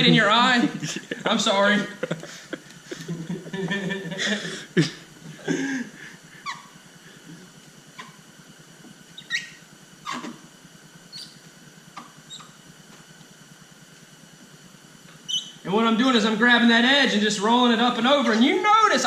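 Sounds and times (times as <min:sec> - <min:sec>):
film squeaking on paint: 0:09.1 - 0:10.4, 0:11.0 - 0:12.8, 0:15.1 - 0:15.7.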